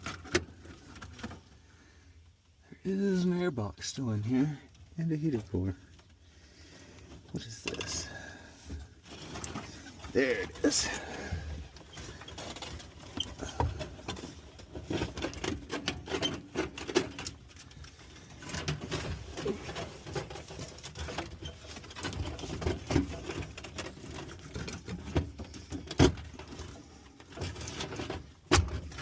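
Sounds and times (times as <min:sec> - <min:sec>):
hands handling car wiring: 0:00.0 - 0:01.6, 0:07.0 - 0:29.0.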